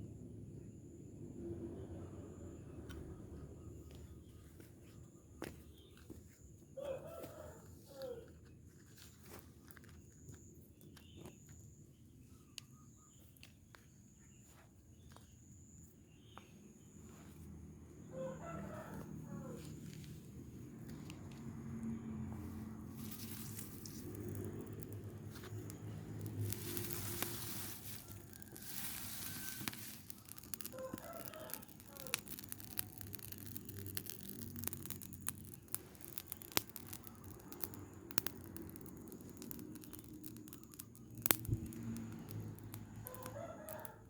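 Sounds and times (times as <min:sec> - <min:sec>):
burning rubbish crackling: 0:02.3 - 0:44.0
rooster crowing: 0:06.8 - 0:08.3, 0:18.0 - 0:19.9, 0:26.5 - 0:32.4, 0:43.0 - 0:44.0
sharp pops: 0:22.3 - 0:44.0.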